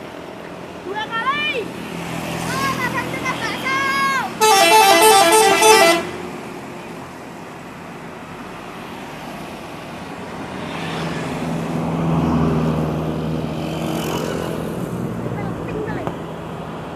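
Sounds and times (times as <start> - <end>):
vehicle engine hum passing: 0.0 - 16.9.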